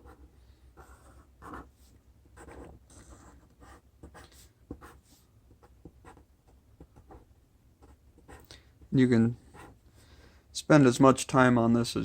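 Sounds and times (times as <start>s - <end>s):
marker drawing on paper: 0.0s - 8.4s.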